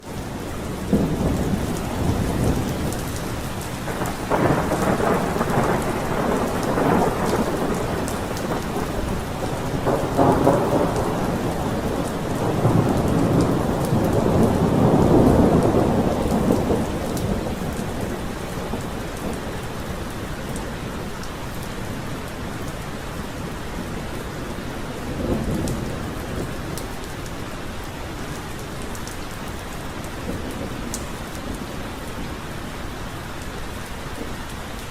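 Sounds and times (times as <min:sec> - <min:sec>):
heavy rain: 0:00.0 - 0:34.9
rolling thunder: 0:00.7 - 0:22.3, 0:23.6 - 0:27.0.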